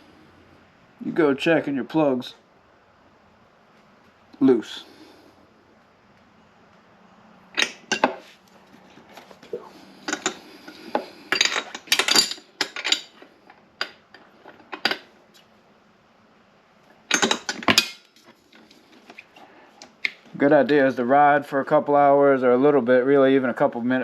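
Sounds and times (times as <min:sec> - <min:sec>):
metal hand tools clinking: 0:07.6 - 0:08.2, 0:09.9 - 0:15.1, 0:17.1 - 0:18.2
loud clatter of tools: 0:07.6 - 0:09.3, 0:09.9 - 0:15.1, 0:17.0 - 0:19.4.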